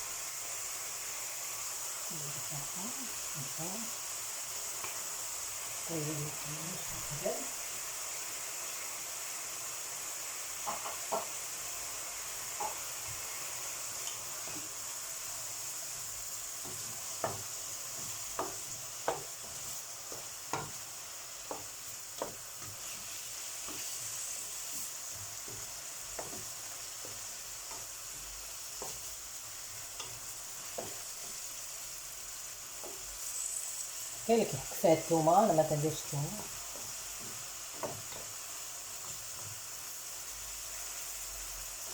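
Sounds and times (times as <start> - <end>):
vegetables sizzling in a pan: 0.0 - 41.9
utensil knocking against pan: 10.6 - 11.3, 16.7 - 17.5, 18.3 - 19.4, 20.1 - 20.8, 25.4 - 27.8.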